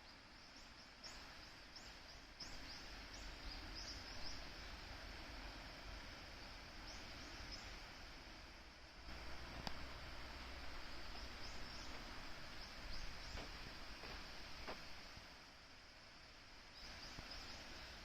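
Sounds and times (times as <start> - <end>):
bird chirping: 0.0 - 5.0, 9.1 - 14.8
waterfall and stream rushing: 1.0 - 18.0.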